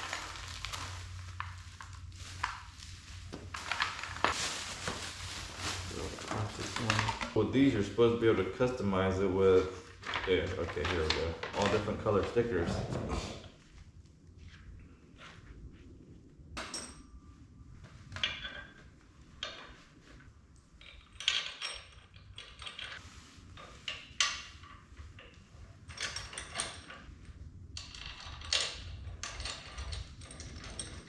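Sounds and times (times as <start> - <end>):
tools and parts clinking: 16.6 - 17.3, 18.1 - 20.0, 20.6 - 31.0.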